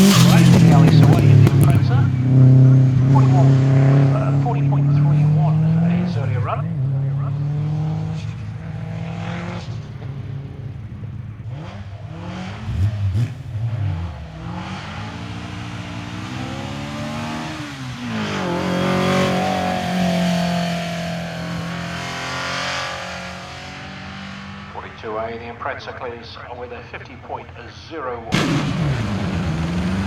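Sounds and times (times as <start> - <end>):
race car engine revving: 0.0 - 30.0
short loud engine burst: 28.3 - 30.0.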